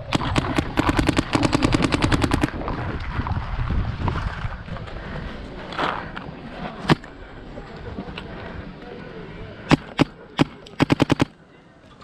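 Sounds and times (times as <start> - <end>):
paintball marker firing rapidly: 0.0 - 2.6, 9.7 - 11.4.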